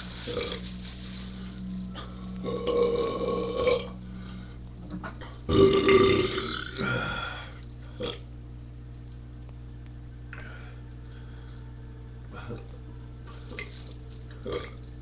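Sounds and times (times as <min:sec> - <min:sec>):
man belching: 0:02.4 - 0:04.0, 0:05.5 - 0:07.3, 0:08.0 - 0:08.2, 0:14.4 - 0:14.8.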